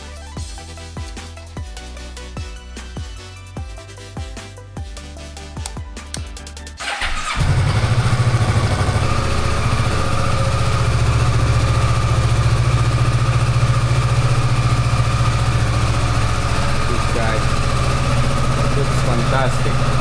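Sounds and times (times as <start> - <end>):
music: 0.0 - 7.6
motorcycle engine starting and idling: 6.8 - 20.0.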